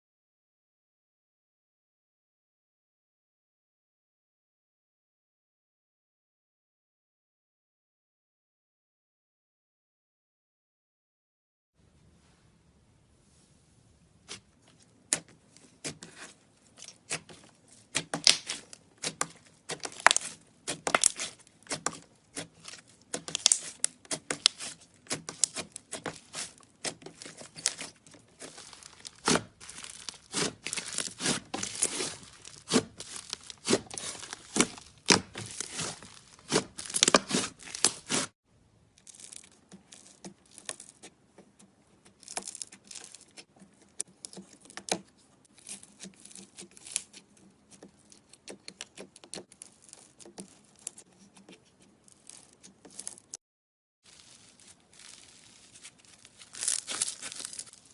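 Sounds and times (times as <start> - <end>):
slime crackling and popping: 15.1 - 38.3, 54.1 - 57.9.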